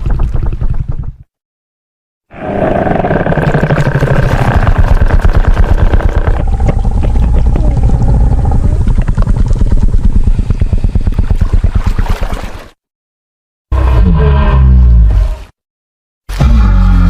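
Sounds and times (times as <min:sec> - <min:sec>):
deep rumbling dinosaur growl: 0:02.3 - 0:11.6, 0:13.7 - 0:15.4.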